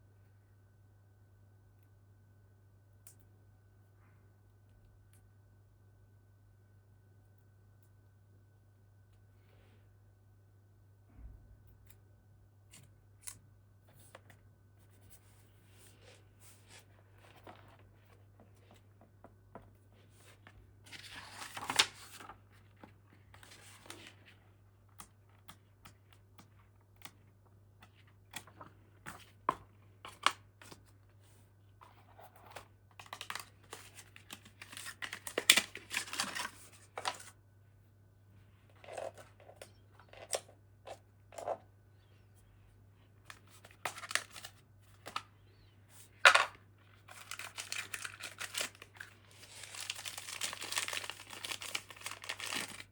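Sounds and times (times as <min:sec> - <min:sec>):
packaging tearing and rustling: 0:33.0 - 0:37.3, 0:43.9 - 0:44.5, 0:47.1 - 0:52.9
packaging clicks and taps: 0:49.7 - 0:52.8.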